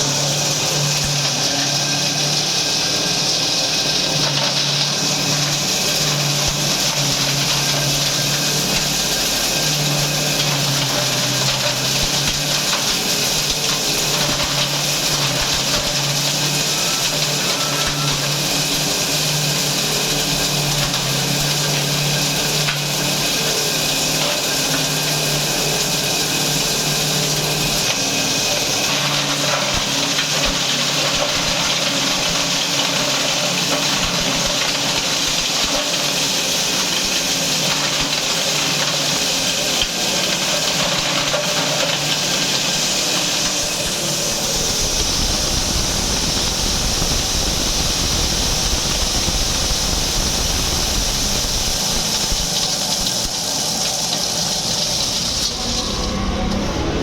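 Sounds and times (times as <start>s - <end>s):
grinder machine running: 0.0s - 57.0s.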